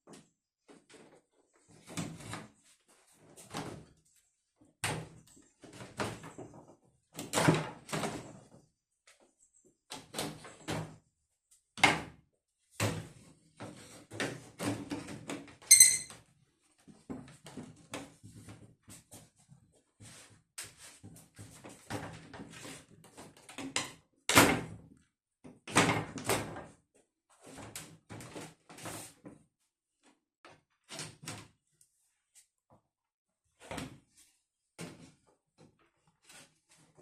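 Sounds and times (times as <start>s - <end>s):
short high squeak: 15.7s - 16.1s.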